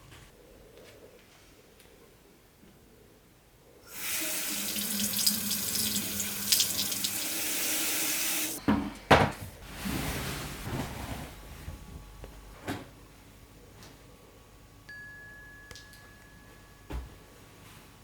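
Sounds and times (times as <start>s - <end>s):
tap water running into sink: 3.9s - 8.6s.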